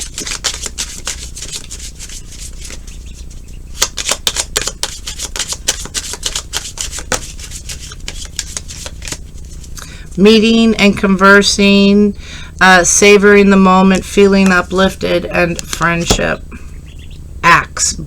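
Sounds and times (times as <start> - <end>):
cards being shuffled: 0.0 - 3.0, 3.7 - 10.2.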